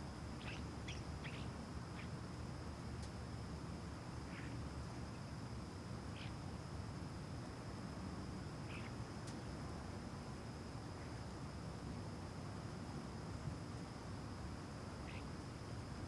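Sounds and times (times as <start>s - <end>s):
bird chirps: 0.4s - 2.2s, 8.6s - 9.0s, 15.0s - 15.4s.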